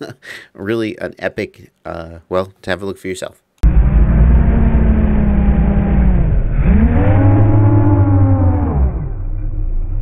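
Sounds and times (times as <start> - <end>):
drone motors and propellers buzzing: 3.6 - 10.0.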